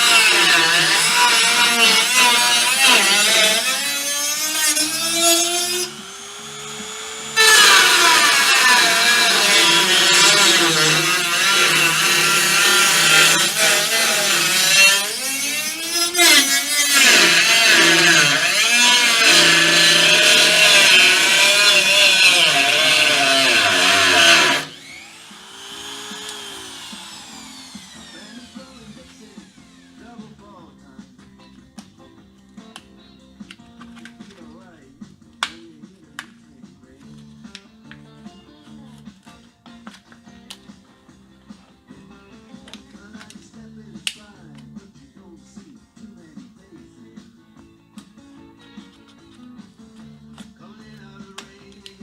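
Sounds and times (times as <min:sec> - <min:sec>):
power tool running on metal: 0:00.0 - 0:30.0.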